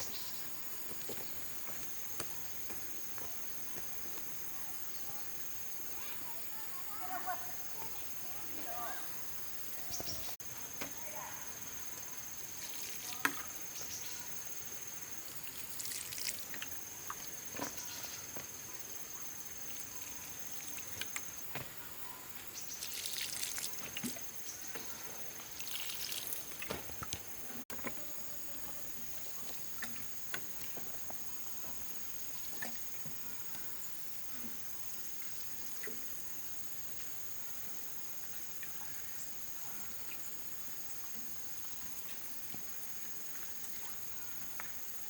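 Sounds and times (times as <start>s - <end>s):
rustling or splashing handling: 22.7s - 28.0s.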